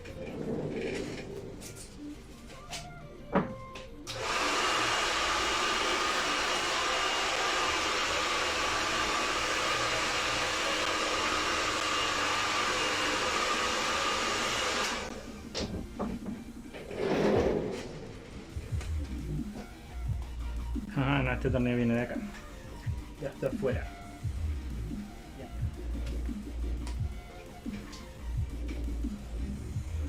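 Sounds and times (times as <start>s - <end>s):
electric air blower running: 4.1s - 15.6s.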